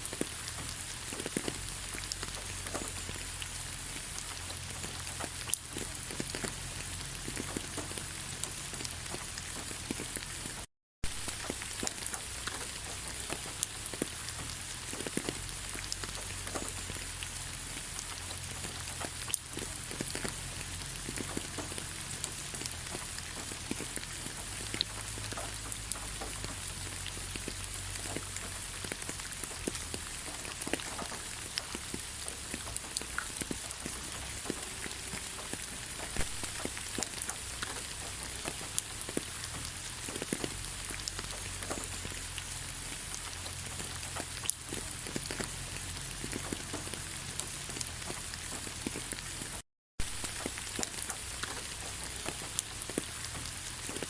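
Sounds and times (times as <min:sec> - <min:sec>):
raindrops ticking: 0:00.0 - 0:54.0
steady rain falling: 0:00.0 - 0:54.0.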